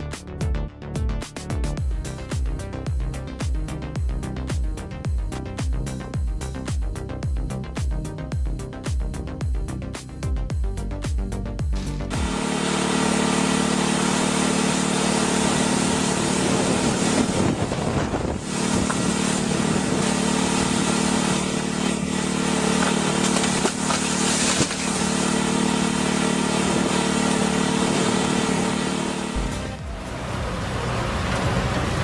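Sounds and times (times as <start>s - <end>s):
large machine engine running: 1.8s - 32.0s
rushing grinding noise: 12.1s - 32.0s.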